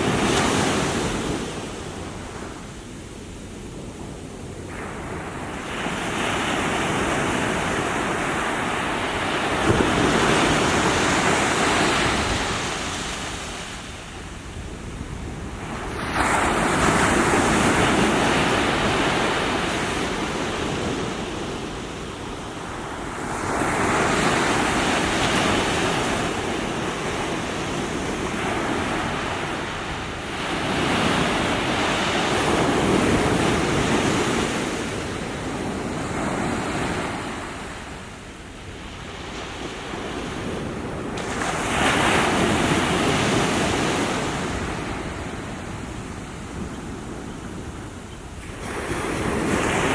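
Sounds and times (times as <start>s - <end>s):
small waves breaking on shore: 0.0s - 49.9s.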